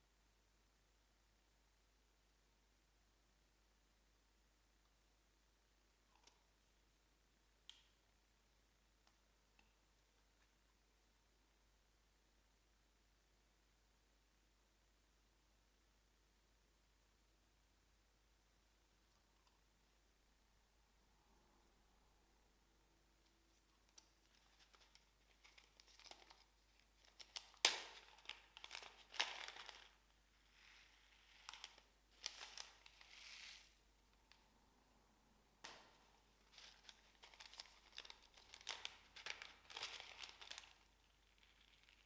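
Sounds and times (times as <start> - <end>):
crinkling handling noises: 23.5 - 34.4, 35.6 - 42.0.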